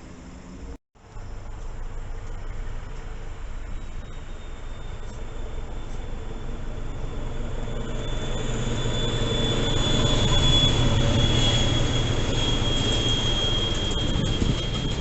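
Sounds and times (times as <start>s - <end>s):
electric train moving on track: 0.0s - 15.0s.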